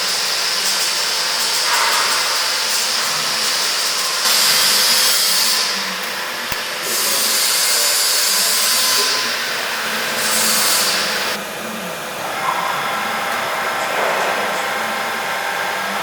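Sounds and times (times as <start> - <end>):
welding arc hissing: 3.0 - 11.4.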